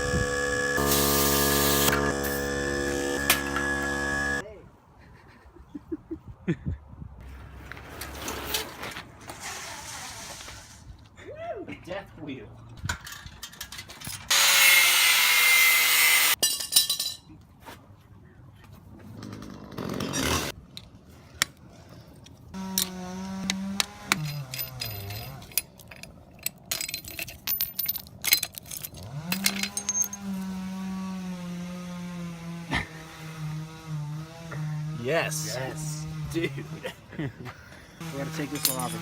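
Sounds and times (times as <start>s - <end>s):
chainsaw cutting: 0.0s - 4.4s, 22.6s - 25.0s, 29.0s - 37.0s, 38.0s - 39.0s
chainsaw engine revving: 0.0s - 4.4s.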